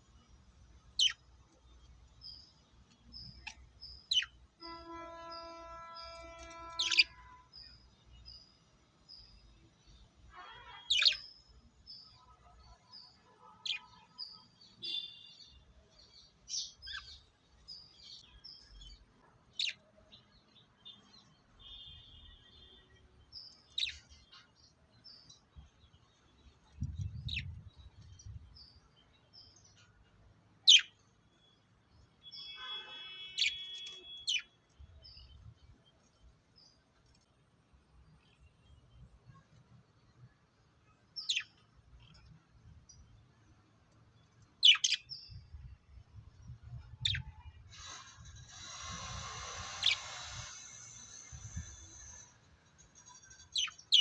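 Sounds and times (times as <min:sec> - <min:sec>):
lovebirds chirping: 0:00.0 - 0:47.9, 0:48.5 - 0:54.0.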